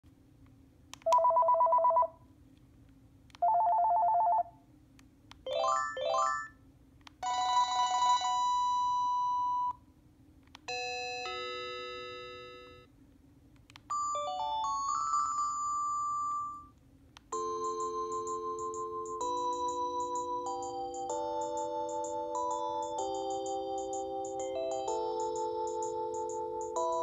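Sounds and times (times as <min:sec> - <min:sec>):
electronic phone ringtones: 0:01.1 - 0:02.2, 0:03.4 - 0:04.5, 0:05.5 - 0:06.6, 0:07.2 - 0:09.8, 0:10.7 - 0:12.9, 0:17.4 - 0:27.0.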